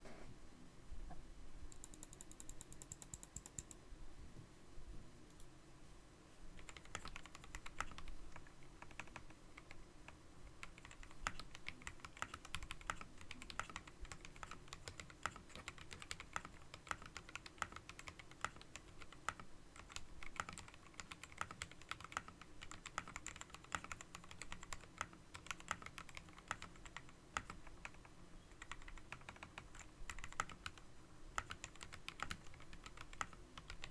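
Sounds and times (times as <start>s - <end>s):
typing on a keyboard: 1.7s - 3.8s, 6.6s - 33.9s.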